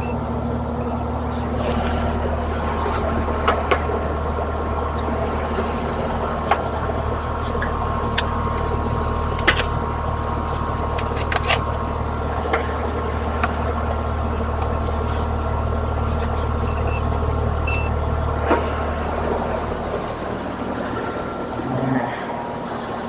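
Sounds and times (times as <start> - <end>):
compressor and fan hum: 0.0 - 23.0
short high beeps: 0.8 - 1.1.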